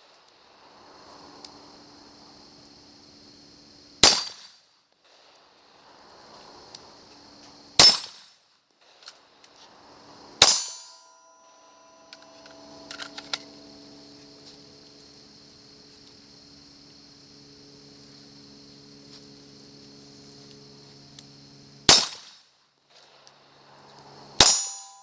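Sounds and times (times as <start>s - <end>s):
gunshots: 4.0s - 4.5s, 21.9s - 22.3s
ringing tone: 10.6s - 14.8s, 24.4s - 25.0s.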